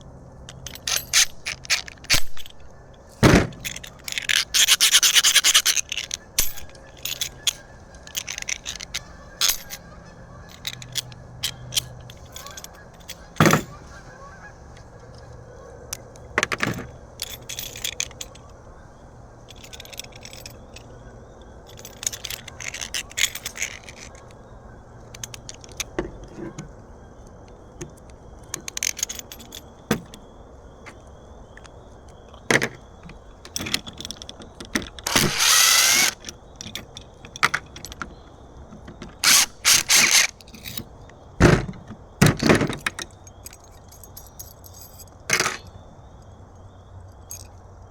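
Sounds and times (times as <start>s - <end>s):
small hard parts clicking and clinking: 0.4s - 14.0s, 14.8s - 18.7s, 19.4s - 26.7s, 27.3s - 46.3s, 47.1s - 47.7s
scraping rustle: 0.5s - 18.5s, 32.3s - 43.9s.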